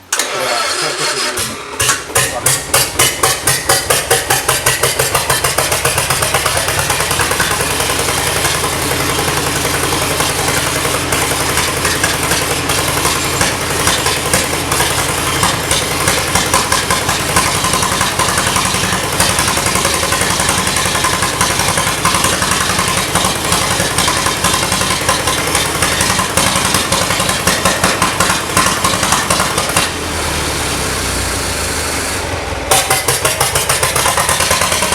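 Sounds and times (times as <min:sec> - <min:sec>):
locomotive engine starting and running: 0:00.0 - 0:34.9.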